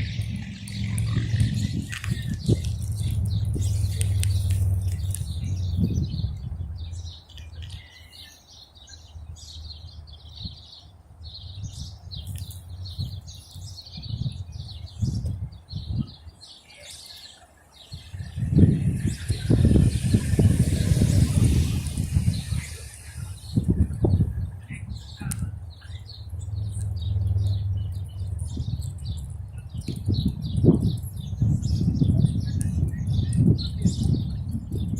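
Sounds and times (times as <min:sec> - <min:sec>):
low rumble: 0:00.0 - 0:07.2, 0:18.0 - 0:34.9
small birds chirping: 0:00.0 - 0:34.9.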